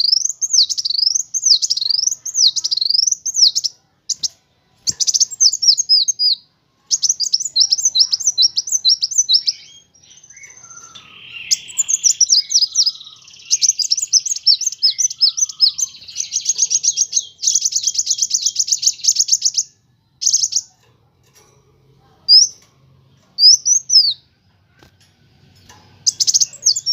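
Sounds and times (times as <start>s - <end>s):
bird chirping and trilling: 0.0s - 20.8s, 22.2s - 24.3s, 25.6s - 26.9s.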